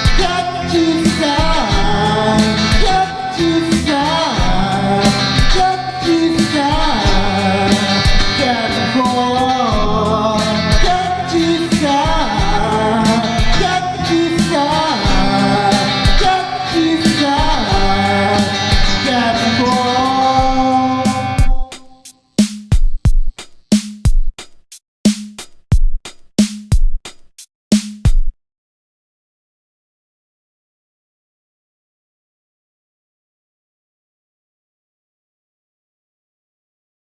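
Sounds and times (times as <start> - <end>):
sliding lead guitar melody: 0.0 - 21.7
rock music with guitar and drums: 0.0 - 22.9.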